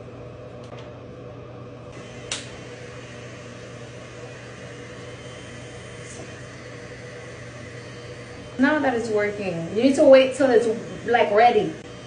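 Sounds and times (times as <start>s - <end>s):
hair styler fan humming: 0.0s - 12.0s
sharp click: 2.3s - 2.5s.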